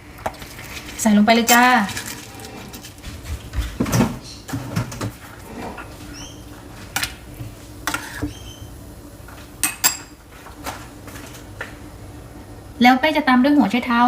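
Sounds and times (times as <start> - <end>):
high squeaks: 8.2 - 8.7
cooking pot and utensils clattering: 9.6 - 10.2.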